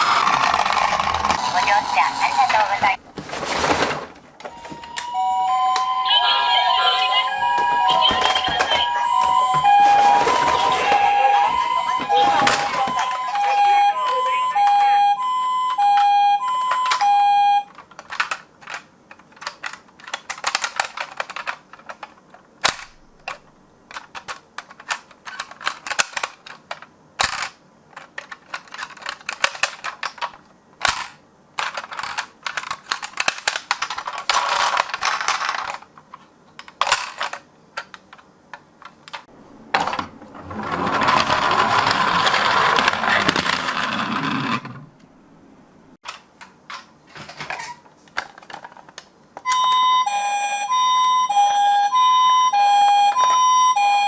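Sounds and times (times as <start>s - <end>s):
toy two-tone siren: 0.0s - 2.9s, 4.4s - 17.7s, 49.5s - 54.0s
toy cars clicking and clacking: 0.0s - 3.0s, 7.1s - 44.8s, 46.0s - 54.0s
continuous rattling: 7.2s - 14.0s.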